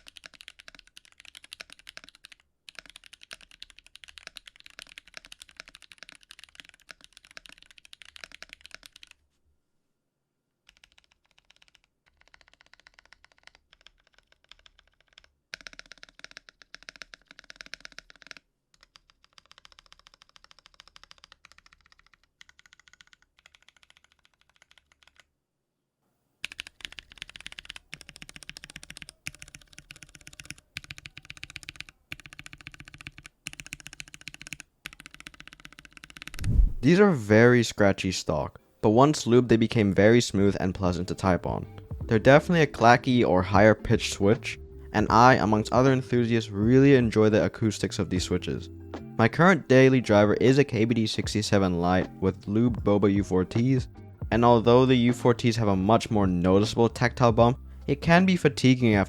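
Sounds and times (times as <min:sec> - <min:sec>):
fast typing on mechanical keyboard: 0:00.0 - 0:09.2, 0:10.7 - 0:25.3, 0:26.4 - 0:36.5.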